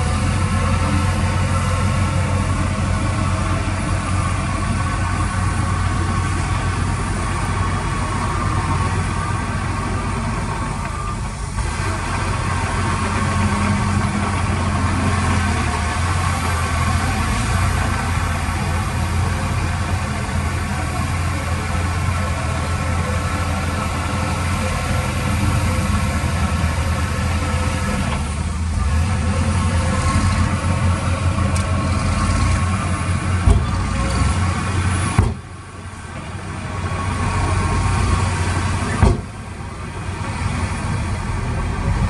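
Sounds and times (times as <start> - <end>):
diesel engine humming: 0.0 - 42.0
sharp knocks: 35.2 - 35.4, 39.0 - 39.3.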